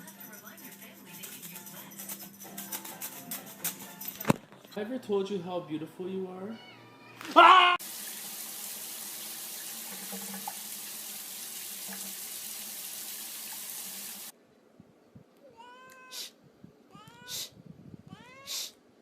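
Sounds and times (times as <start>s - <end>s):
cat meowing: 6.5s - 7.8s, 15.4s - 18.8s
running water: 7.8s - 14.3s.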